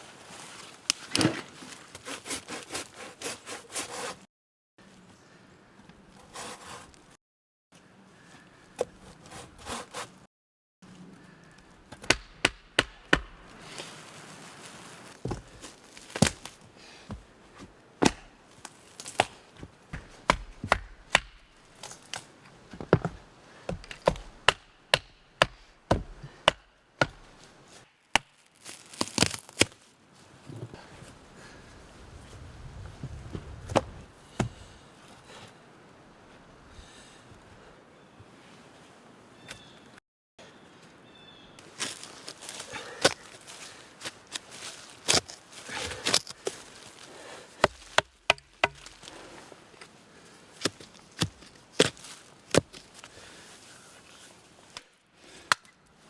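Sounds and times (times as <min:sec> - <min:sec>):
hand saw cutting wood: 0:01.9 - 0:04.3, 0:06.2 - 0:07.0, 0:08.8 - 0:10.3.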